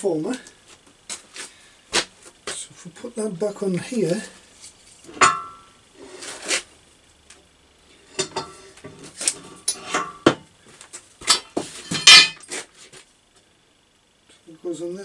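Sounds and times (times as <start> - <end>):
steel tube clanking on metal: 5.1 - 5.7, 8.2 - 8.6, 9.3 - 10.4, 11.2 - 12.4.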